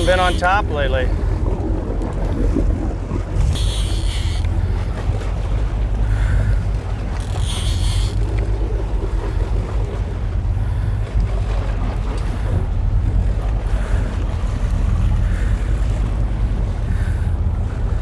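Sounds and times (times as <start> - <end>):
boat engine rumble: 0.0 - 18.0
water rushing along hull: 0.0 - 18.0
wind buffeting microphone: 0.0 - 18.0.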